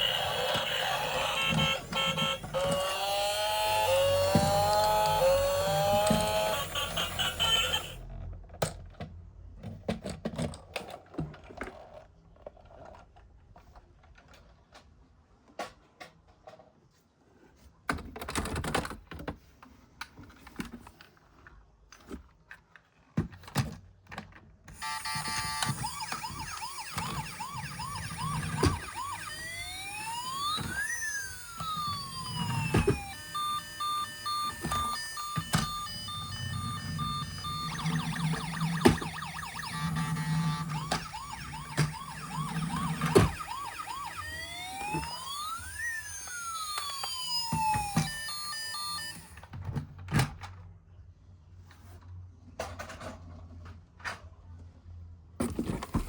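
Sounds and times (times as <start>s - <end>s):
short electronic beeps: 0.0s - 4.0s, 24.8s - 44.1s, 45.0s - 49.3s
toy electronic siren: 0.0s - 8.0s, 24.8s - 49.5s.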